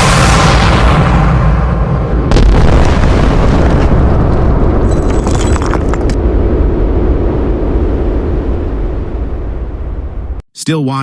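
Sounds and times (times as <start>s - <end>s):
explosion deep rumble: 0.0s - 10.4s
sharp crackles: 2.9s - 6.2s.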